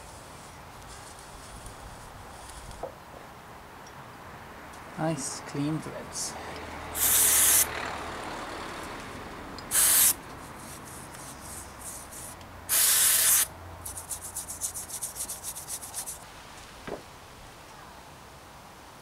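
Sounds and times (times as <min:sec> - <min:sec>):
hissing spray bursts: 0:06.9 - 0:07.7, 0:09.7 - 0:14.2.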